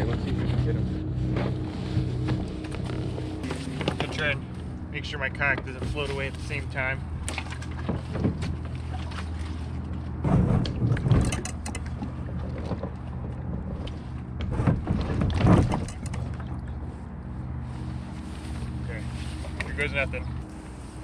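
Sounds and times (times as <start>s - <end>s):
steady low hum: 0.0s - 21.0s
knocking and rustling in kayak: 5.4s - 16.8s.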